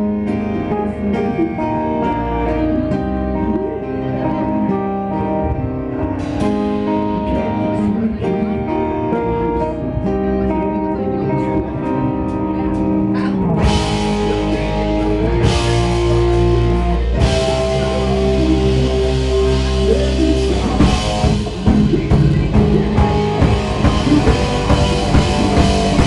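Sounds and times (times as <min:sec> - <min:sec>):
drums: 0:00.0 - 0:26.0
electric guitar notes: 0:00.0 - 0:26.0.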